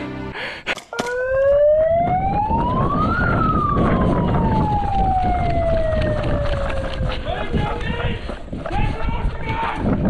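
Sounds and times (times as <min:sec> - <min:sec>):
siren wailing: 0:01.1 - 0:07.1
wind and movement rumble: 0:01.1 - 0:10.0.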